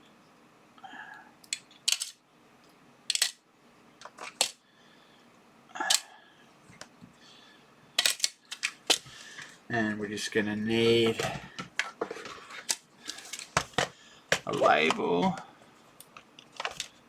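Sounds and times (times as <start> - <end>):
magnets clacking in a box: 1.4 - 2.2, 3.1 - 3.4, 8.0 - 9.0.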